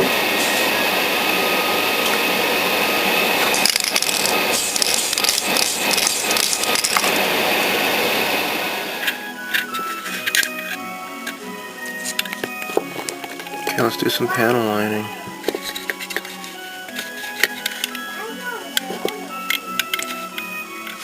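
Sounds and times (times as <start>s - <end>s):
aerosol spray can hissing: 3.2s - 8.2s
rapid clicks and rattles: 3.5s - 7.2s.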